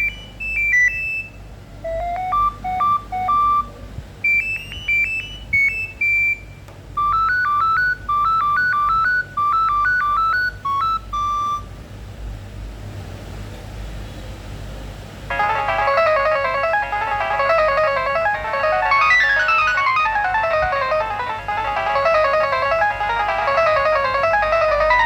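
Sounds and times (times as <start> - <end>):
phone ringtone melody: 0.0 - 1.2, 1.9 - 6.3, 7.0 - 11.6, 15.3 - 25.0.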